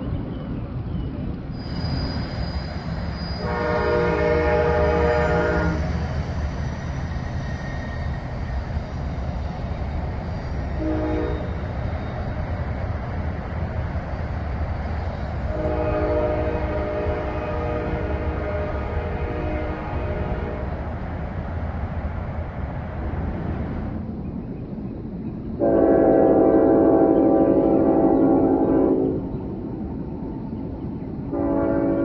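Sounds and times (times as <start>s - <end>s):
distant locomotive horn: 1.6s - 24.0s, 25.6s - 29.4s, 31.3s - 32.0s
steady low rumble: 12.8s - 24.7s.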